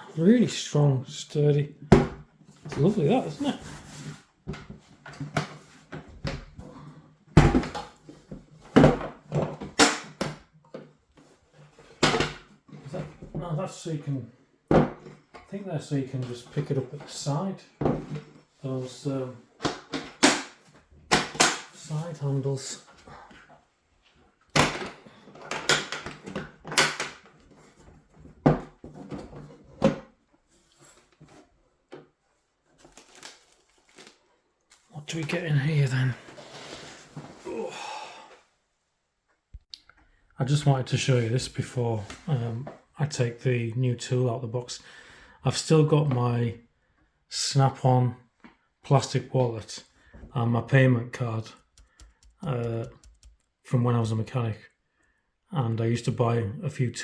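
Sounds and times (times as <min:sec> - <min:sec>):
tool box knocks and thumps: 0:07.4 - 0:07.9
plastic case clicks and knocks: 0:51.7 - 0:53.4.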